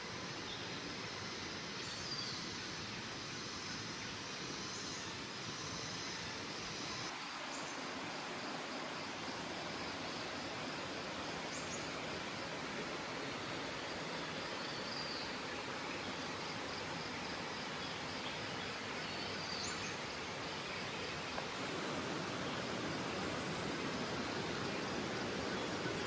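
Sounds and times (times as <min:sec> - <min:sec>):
forest river rushing: 0:00.0 - 0:26.0.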